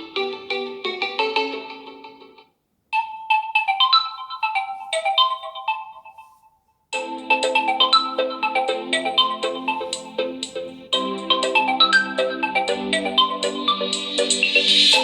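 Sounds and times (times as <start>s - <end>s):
phone ringtone melodies: 3.0s - 6.4s, 7.0s - 15.0s.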